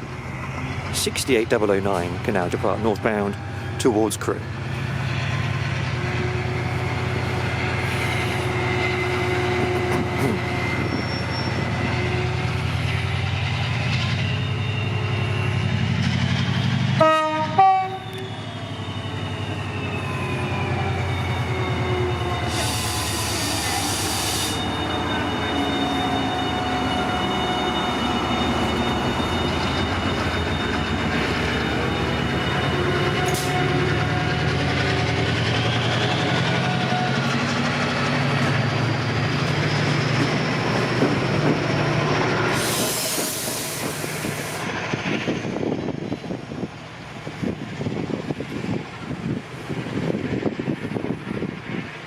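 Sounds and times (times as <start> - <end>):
locomotive engine drone: 0.0 - 52.0
locomotive horn blast: 7.9 - 10.9, 17.0 - 18.2.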